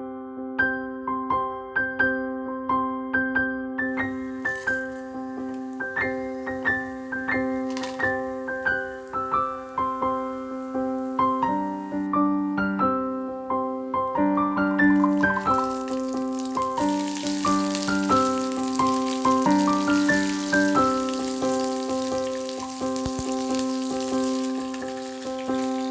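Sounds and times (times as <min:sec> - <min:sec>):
gentle piano music: 0:00.0 - 0:25.9
faint high hiss: 0:04.0 - 0:12.8, 0:14.8 - 0:25.9.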